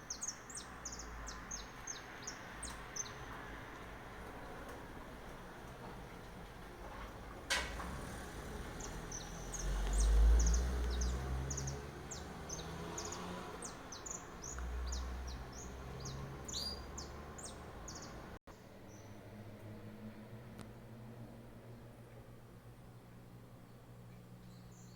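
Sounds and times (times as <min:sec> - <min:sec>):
small birds chirping: 0:00.0 - 0:04.8, 0:08.3 - 0:19.2, 0:22.9 - 0:24.9.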